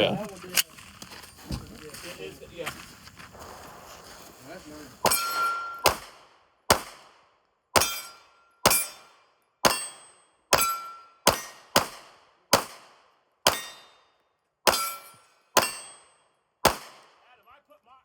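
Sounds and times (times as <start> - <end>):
pistol shots: 5.0 - 7.2, 7.8 - 14.0, 14.7 - 16.0, 16.6 - 17.2.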